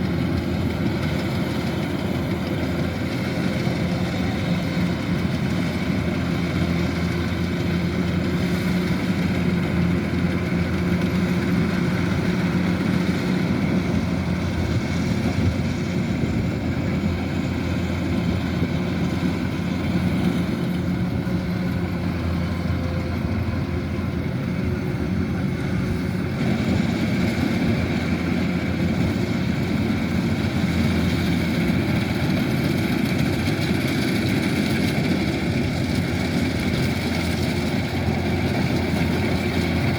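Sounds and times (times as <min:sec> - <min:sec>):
combine harvester engine drone: 0:00.0 - 0:39.9.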